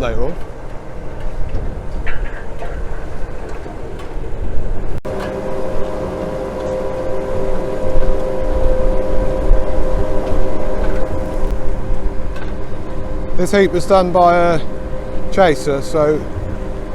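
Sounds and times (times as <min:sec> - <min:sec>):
engine drone with whine: 0:02.2 - 0:16.9
farm machinery rumbling: 0:05.0 - 0:16.9.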